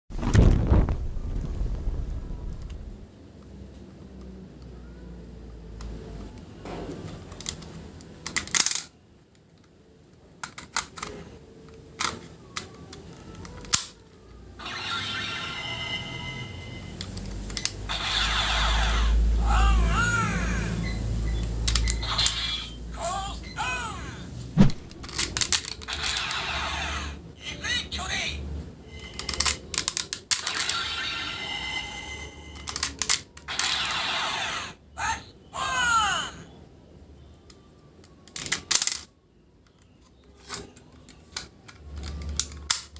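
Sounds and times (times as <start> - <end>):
plastic toy clicks: 7.3 - 8.9, 10.4 - 11.2, 29.1 - 30.8, 32.6 - 33.8, 38.0 - 39.1, 40.8 - 42.9
electronic toy sound effects: 14.6 - 16.9, 17.9 - 21.0, 21.8 - 24.1
plastic toy rattling: 25.0 - 26.3, 29.1 - 30.8, 32.6 - 33.6.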